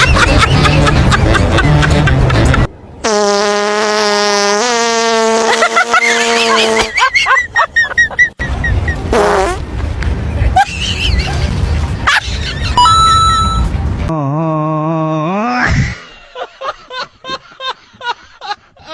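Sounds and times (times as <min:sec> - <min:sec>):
buzzy fart sound: 0:00.6 - 0:07.0, 0:09.1 - 0:09.6.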